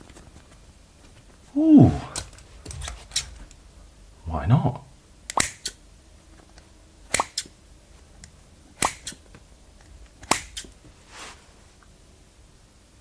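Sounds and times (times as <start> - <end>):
scissors blades clicking: 5.3 - 5.8, 8.8 - 9.2, 10.2 - 10.7
foam rustling: 10.9 - 11.8.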